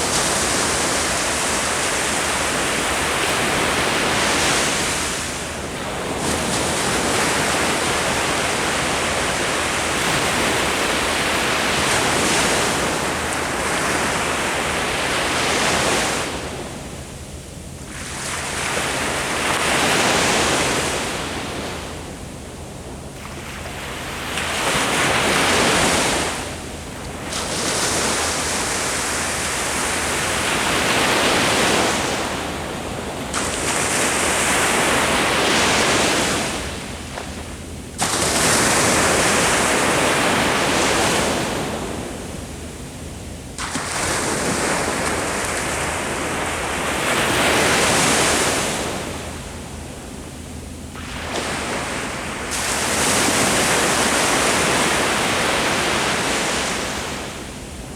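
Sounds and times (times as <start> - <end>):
ocean waves breaking on shore: 0.0 - 57.9.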